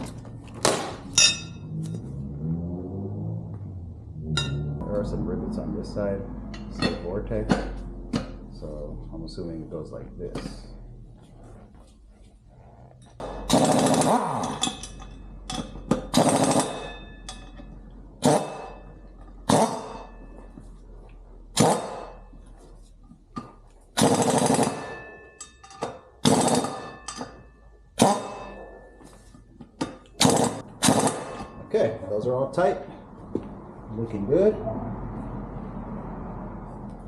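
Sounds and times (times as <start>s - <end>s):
impact wrench hammering: 13.2s - 17.6s, 24.0s - 27.4s, 28.0s - 28.8s, 29.8s - 31.7s.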